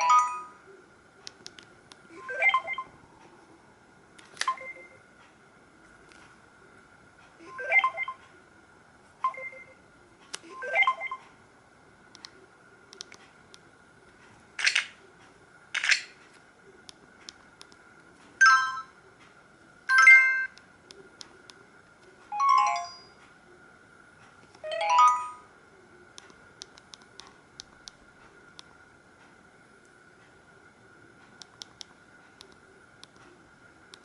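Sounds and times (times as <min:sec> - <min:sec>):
phone ringtone chime notes: 0:22.4 - 0:23.1, 0:24.7 - 0:25.4.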